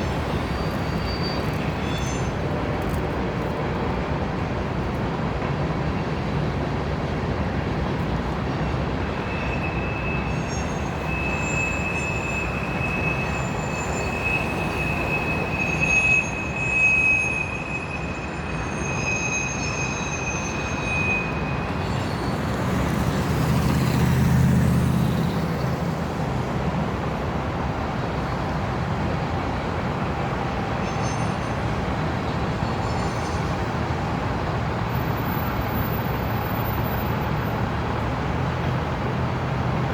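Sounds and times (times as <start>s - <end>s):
train wheels squealing: 0.0s - 3.1s, 8.5s - 26.0s, 30.7s - 37.7s
freight train rolling past: 0.0s - 39.9s.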